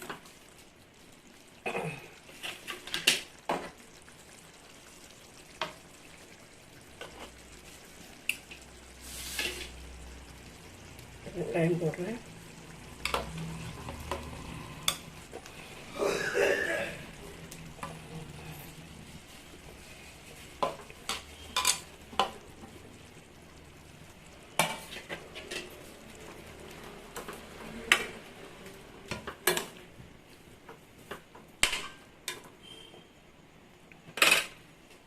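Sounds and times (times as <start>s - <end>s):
low sizzle of cooking: 0.0s - 35.0s
spoon scraping a pan: 2.3s - 3.8s, 6.8s - 9.8s, 20.3s - 22.4s, 24.5s - 25.9s.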